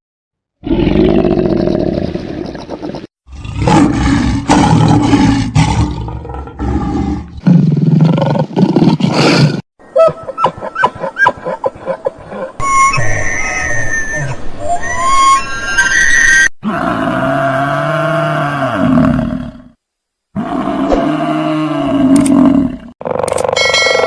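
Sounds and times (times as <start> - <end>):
animal roaring: 3.3 - 9.6, 16.6 - 19.7, 20.4 - 23.6.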